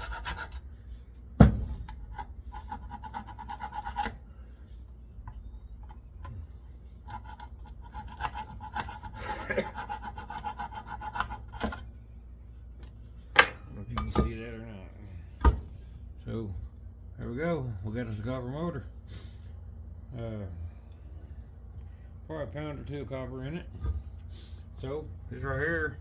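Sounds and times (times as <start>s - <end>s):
metal scraping against metal: 13.2s - 14.5s
faint metallic ringing: 13.2s - 14.8s.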